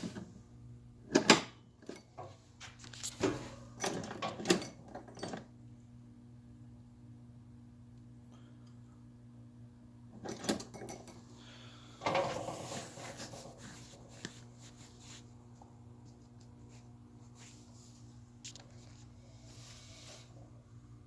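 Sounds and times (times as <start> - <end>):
low electrical hum: 0.0 - 21.0
clattering rustle: 12.0 - 14.4.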